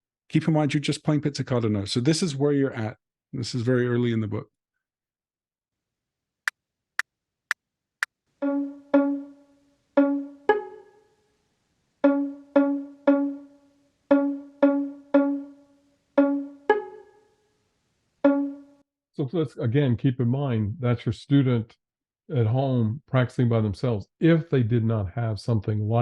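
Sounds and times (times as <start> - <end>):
count-off clicks: 8.4 - 9.4, 10.0 - 10.8, 12.0 - 15.6, 16.2 - 17.1, 18.2 - 18.7
plucked string notes: 8.4 - 10.9, 12.0 - 17.1, 18.2 - 18.8.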